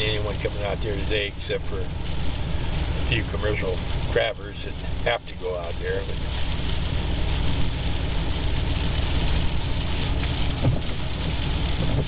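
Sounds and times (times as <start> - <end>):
storm surf: 5.8 - 12.0
wind buffeting microphone: 9.2 - 12.0
strong wind: 10.1 - 12.0.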